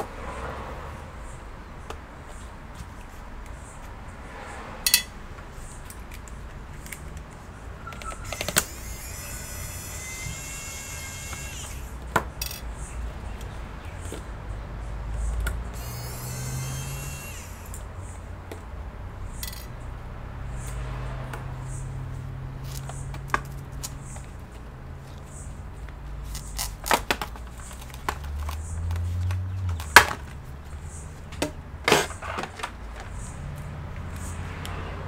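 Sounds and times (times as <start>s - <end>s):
small metal tools clinking: 4.9s - 5.1s, 12.4s - 12.7s, 19.4s - 19.7s.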